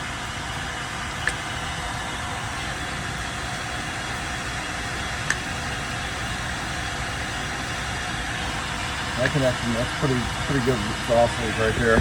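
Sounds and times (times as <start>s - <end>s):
shop vac blowing: 0.0s - 12.0s.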